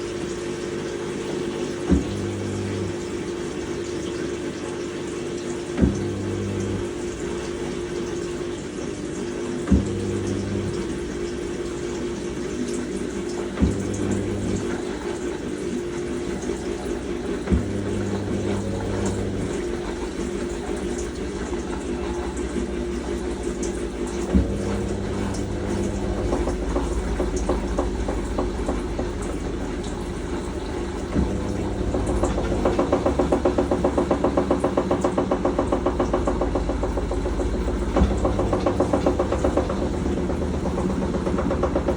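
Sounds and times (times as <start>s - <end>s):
drain pump running: 0.0s - 41.9s
water rushing out: 5.2s - 41.9s
rapid rhythmic pulsing: 16.5s - 41.9s.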